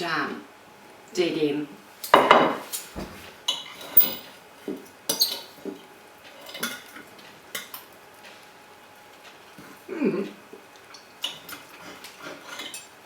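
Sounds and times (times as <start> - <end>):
cutlery clinking on plates: 2.1 - 7.9, 11.2 - 12.9.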